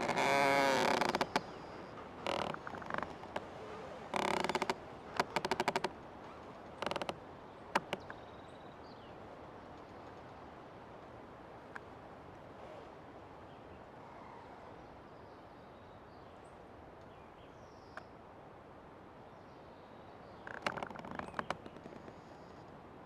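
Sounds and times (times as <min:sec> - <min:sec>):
tree wood creaking clicks: 0:00.0 - 0:03.5, 0:04.1 - 0:06.0, 0:06.6 - 0:08.2, 0:20.4 - 0:22.7
forest ambience: 0:00.0 - 0:18.3, 0:19.2 - 0:22.8.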